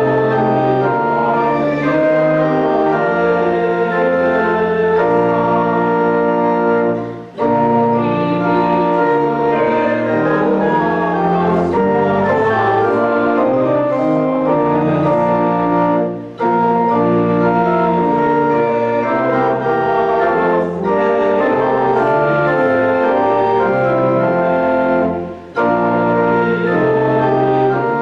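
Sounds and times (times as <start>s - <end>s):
church organ playing a hymn: 0.0s - 28.0s.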